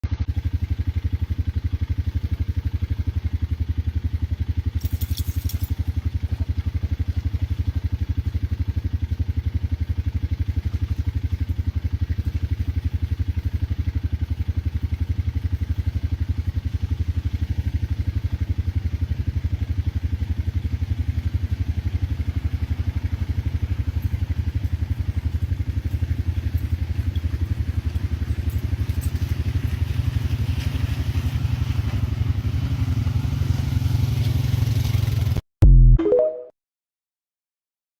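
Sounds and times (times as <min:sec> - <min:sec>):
vehicle engine running: 0:00.0 - 0:35.4
brief clatter: 0:04.8 - 0:05.8.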